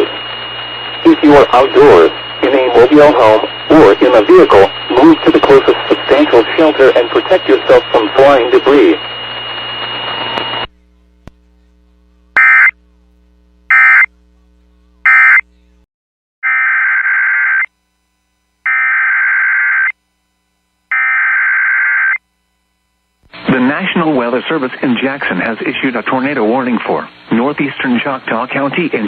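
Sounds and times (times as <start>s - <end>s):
radio static: 0.0s - 10.7s, 12.4s - 12.7s, 23.3s - 29.0s.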